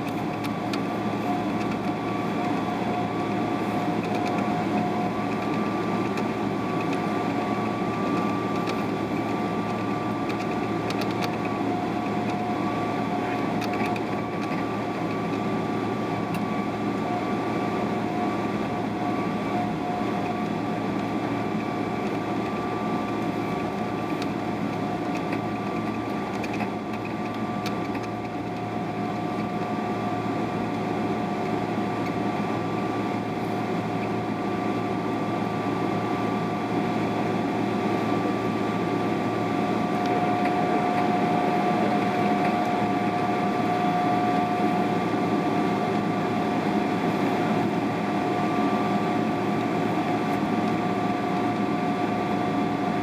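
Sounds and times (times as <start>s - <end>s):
airliner cabin hum: 0.0s - 53.0s.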